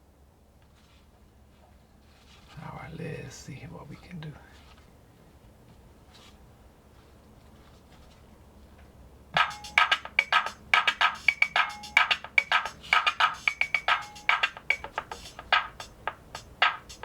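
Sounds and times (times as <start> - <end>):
clicky drum machine beat: 9.4 - 17.0.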